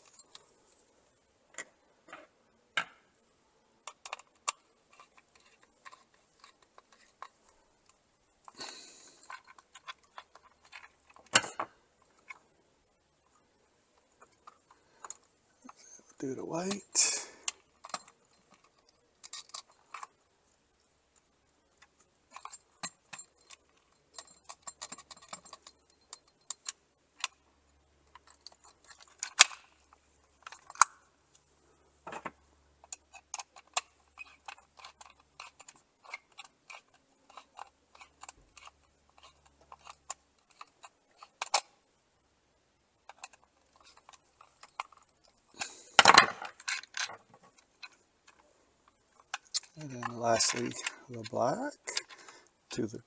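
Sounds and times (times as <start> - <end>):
screwdriver clicks and scrapes: 3.9 - 12.4, 16.6 - 20.2, 21.8 - 27.4, 28.1 - 31.0, 32.8 - 41.7, 43.0 - 51.2
rustling clatter: 3.9 - 12.6, 13.2 - 41.7, 42.9 - 52.5.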